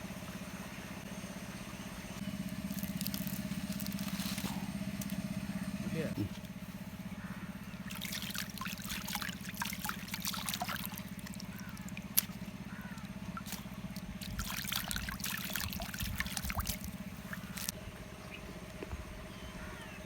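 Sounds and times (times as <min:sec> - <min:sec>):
steady low hum: 0:00.0 - 0:20.0
crunchy chewing: 0:02.4 - 0:05.5, 0:07.9 - 0:17.8.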